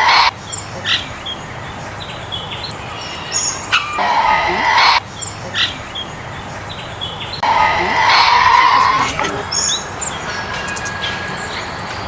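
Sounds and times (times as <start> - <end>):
animal squeaks and chirps: 2.9 - 5.8.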